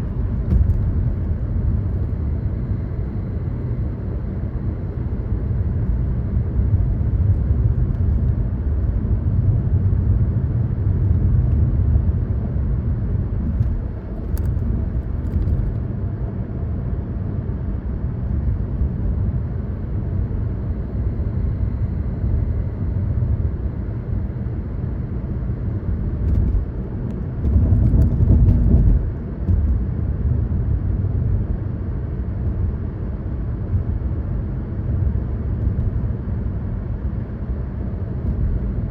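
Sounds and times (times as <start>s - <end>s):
car engine and tyres rumbling: 0.0s - 38.9s.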